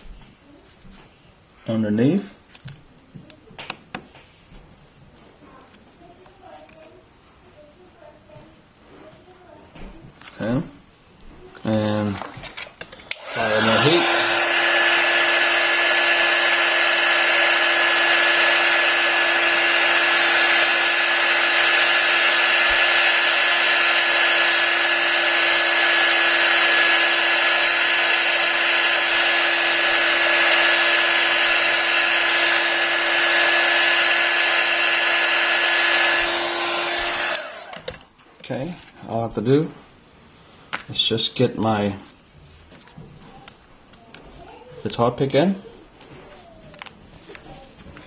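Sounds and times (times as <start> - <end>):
heat gun blowing hot air: 13.1 - 37.9.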